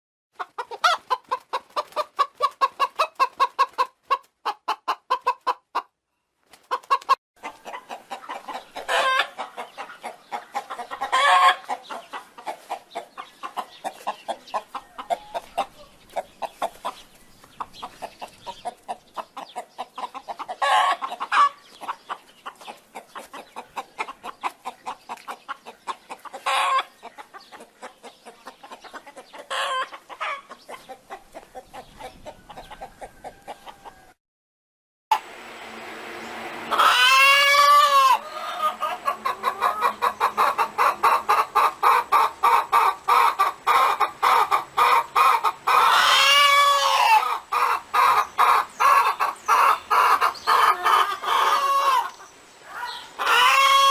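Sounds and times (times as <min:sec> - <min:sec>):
drawn-out chicken call: 0:00.4 - 0:06.0, 0:06.6 - 0:34.2, 0:36.6 - 0:53.9
chickens clucking: 0:00.4 - 0:34.2, 0:36.6 - 0:53.9.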